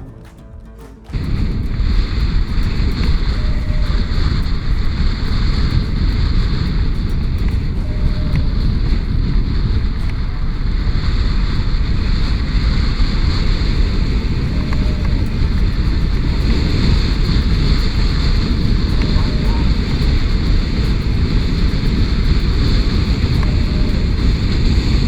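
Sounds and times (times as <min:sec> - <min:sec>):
soft music: 0:00.0 - 0:02.0
wind buffeting microphone: 0:00.0 - 0:25.0.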